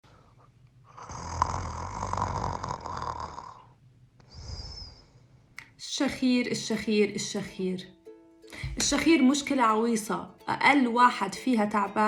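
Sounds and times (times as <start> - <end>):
person snoring: 0.9 - 5.2.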